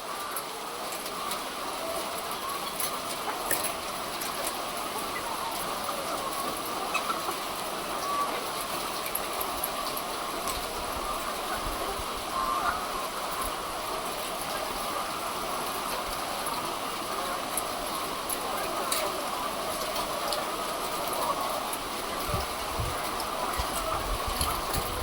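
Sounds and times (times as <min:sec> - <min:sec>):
chickens calling faintly: 0:00.0 - 0:25.0.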